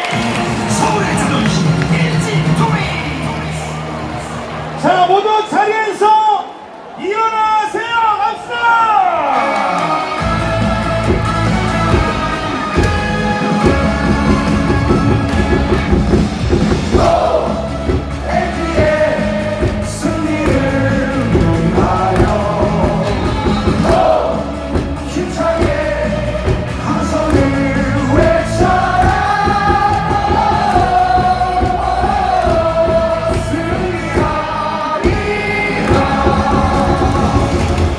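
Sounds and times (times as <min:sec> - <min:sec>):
cheer music over loudspeakers: 0:00.0 - 0:37.9
crowd singing along: 0:09.1 - 0:37.9.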